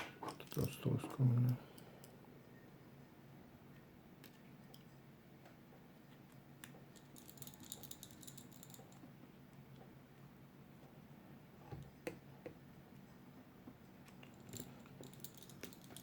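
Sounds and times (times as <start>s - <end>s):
faint steady hum: 0.0s - 16.0s
light ticks of small parts: 3.7s - 10.0s, 11.8s - 16.0s.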